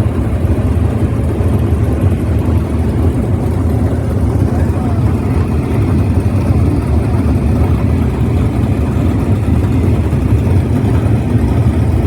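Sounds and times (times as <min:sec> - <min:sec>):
motor vehicle low rumble: 0:00.0 - 0:12.0.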